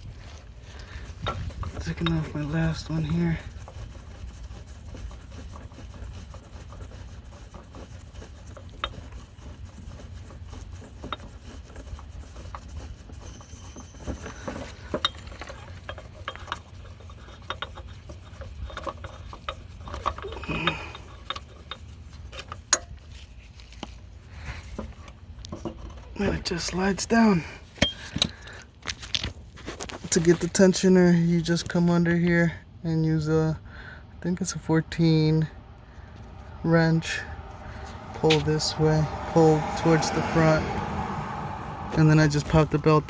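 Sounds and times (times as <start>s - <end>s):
metal clinks: 27.8s - 28.4s.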